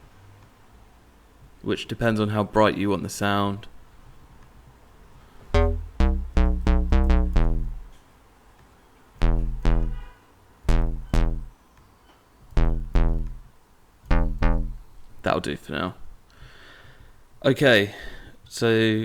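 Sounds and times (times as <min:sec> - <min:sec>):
synth bass pluck notes: 0:05.6 - 0:08.0, 0:09.2 - 0:10.1, 0:10.7 - 0:11.5, 0:12.6 - 0:13.5, 0:14.1 - 0:14.9.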